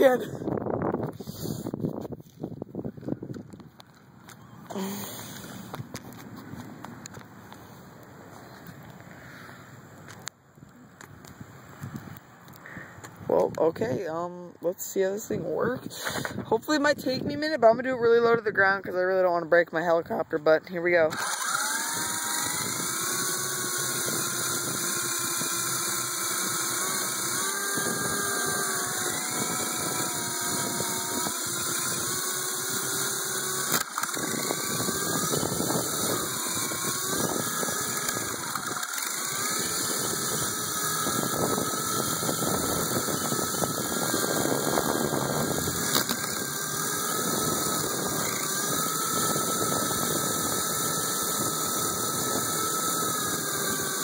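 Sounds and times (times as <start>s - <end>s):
rc helicopter motor whine: 0.0s - 10.2s, 21.0s - 54.0s.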